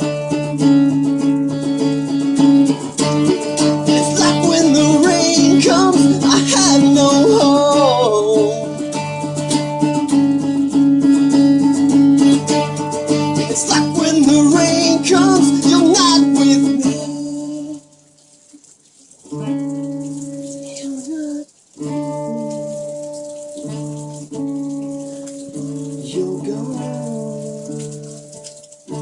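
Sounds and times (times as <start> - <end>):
guitar playing: 0.0 - 29.0
person singing: 3.3 - 9.1, 13.4 - 17.9, 20.6 - 22.9, 25.6 - 28.2.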